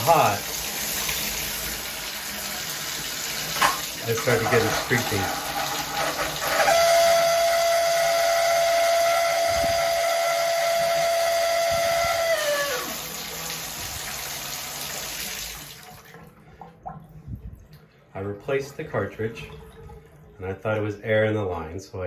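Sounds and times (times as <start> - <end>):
shower water rushing: 0.0 - 16.3
shower valve high whistle: 6.5 - 13.7.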